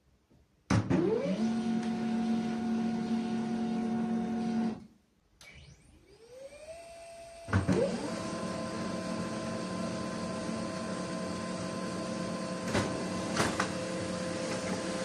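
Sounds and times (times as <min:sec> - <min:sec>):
printer motor whirring: 0:05.5 - 0:15.0.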